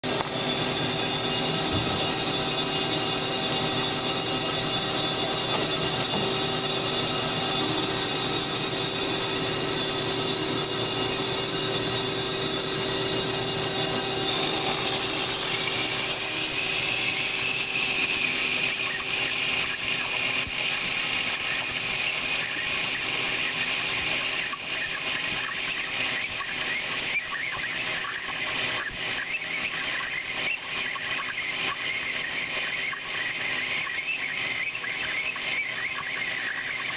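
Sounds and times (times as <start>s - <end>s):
high squealing tone: 0.0s - 23.7s
bandsaw hum: 0.0s - 24.3s.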